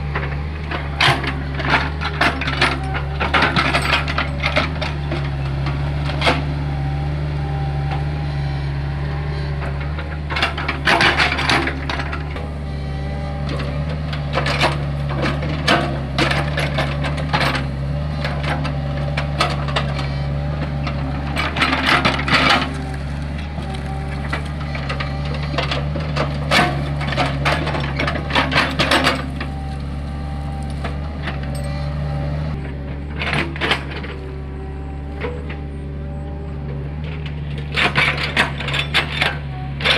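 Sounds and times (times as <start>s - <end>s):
excavator engine running: 0.0s - 39.9s
bucket clattering and scraping soil: 13.4s - 31.8s.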